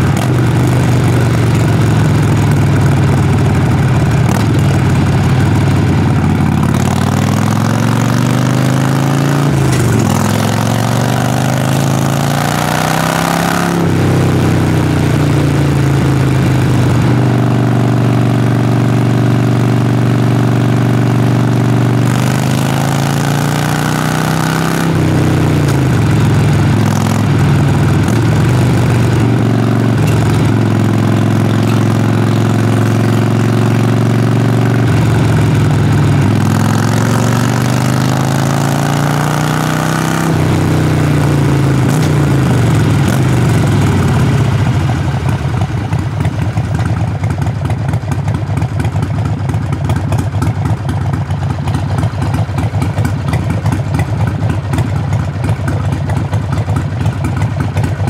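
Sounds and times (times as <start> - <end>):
motorcycle exhaust revving: 0.0 - 58.0.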